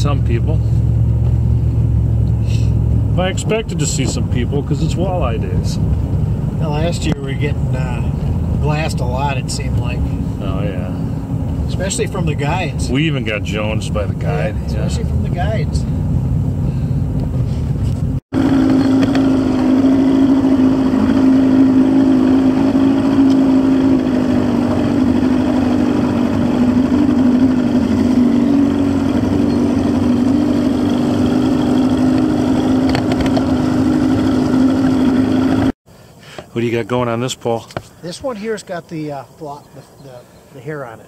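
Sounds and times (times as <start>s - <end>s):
low vehicle rumble: 0.0s - 35.8s
outboard boat motor running: 18.3s - 35.8s.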